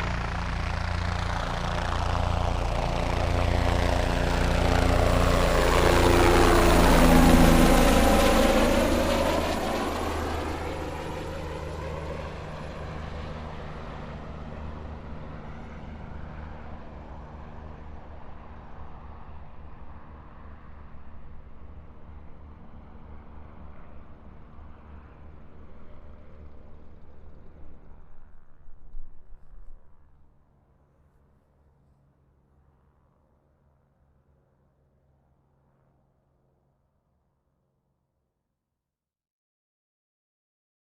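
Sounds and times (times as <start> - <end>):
helicopter engine and rotor: 0.0 - 28.6.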